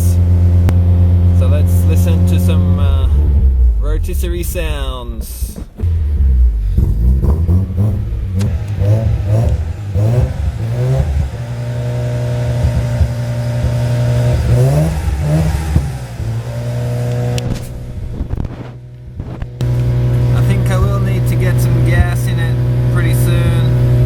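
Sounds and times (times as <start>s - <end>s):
rotary engine revving: 0.0s - 24.0s.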